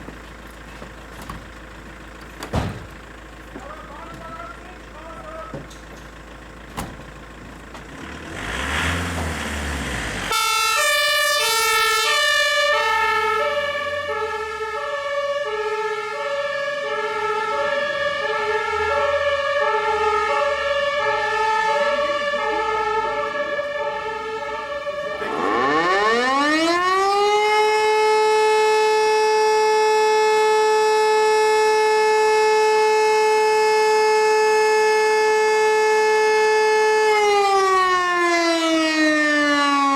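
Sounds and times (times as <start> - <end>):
civil-defence siren wailing: 10.2 - 39.9
fire engine two-tone siren: 10.2 - 39.9.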